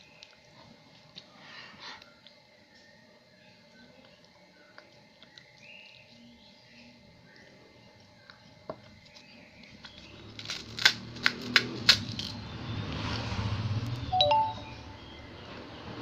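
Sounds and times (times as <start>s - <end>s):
crisp cracks of eating: 4.0s - 6.2s, 7.3s - 12.4s.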